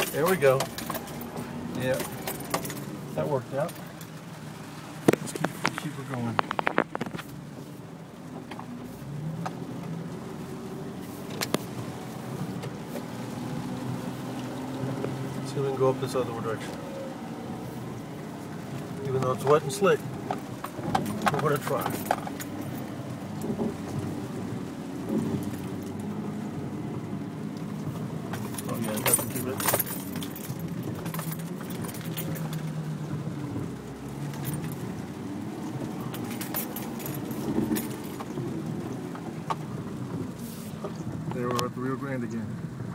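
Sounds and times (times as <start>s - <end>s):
car engine running: 0.0s - 42.9s
vehicle rattles and clinks: 0.0s - 42.9s.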